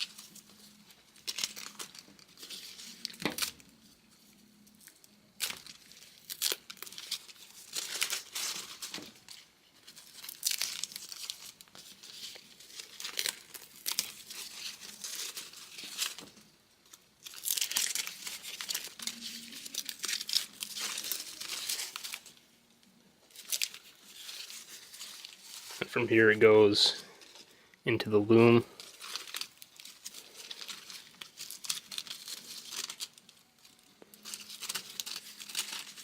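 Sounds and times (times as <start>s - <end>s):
tape ripping off: 0.0s - 3.8s, 4.6s - 22.4s, 28.8s - 36.0s
plastic loom crinkling: 4.5s - 22.4s, 23.2s - 26.0s, 28.3s - 36.0s.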